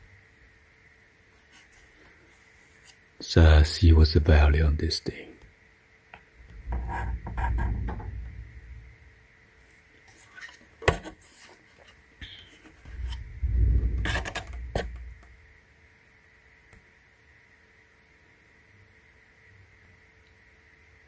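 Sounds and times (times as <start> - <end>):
low rumbling shuffle: 6.4 - 9.2, 12.8 - 15.5.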